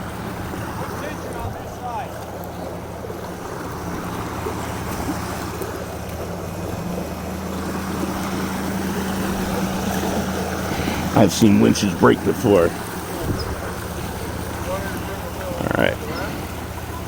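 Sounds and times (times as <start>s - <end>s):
floodwater rushing: 0.0s - 17.0s
vehicle engine running: 0.0s - 17.0s.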